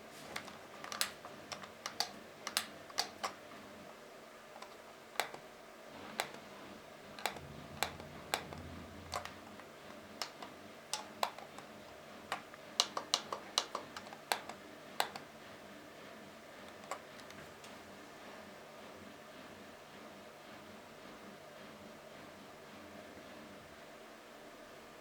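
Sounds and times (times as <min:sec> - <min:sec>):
pushbuttons clicking: 0:00.4 - 0:03.4, 0:04.6 - 0:05.4, 0:06.1 - 0:06.4, 0:07.2 - 0:09.6, 0:10.2 - 0:15.3.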